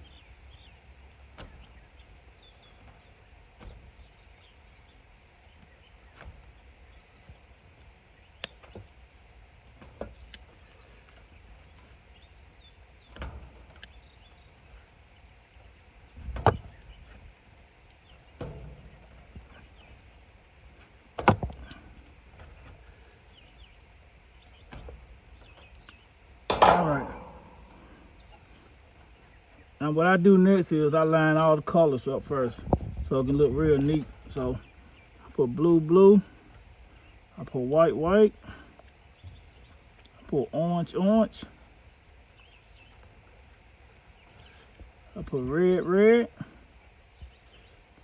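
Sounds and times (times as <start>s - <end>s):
light clicks and knocks: 0.0s - 29.8s
low steady rumble: 0.0s - 48.0s.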